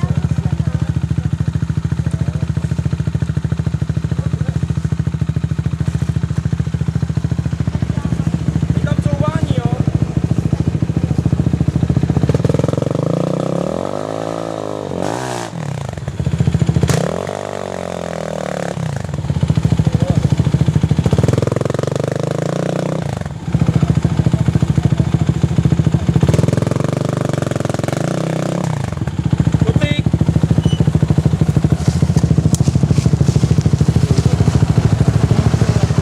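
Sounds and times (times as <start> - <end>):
quad engine revving: 0.0 - 36.0
quad engine steady note: 0.0 - 36.0.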